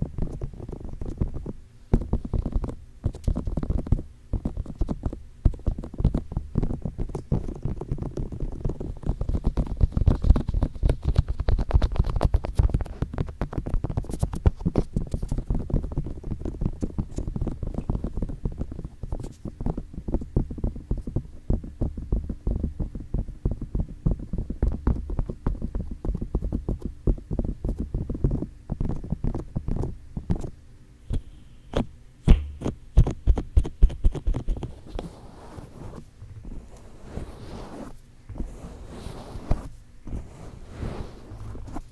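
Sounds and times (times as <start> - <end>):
fingers tapping on microphone: 0.0 - 30.5.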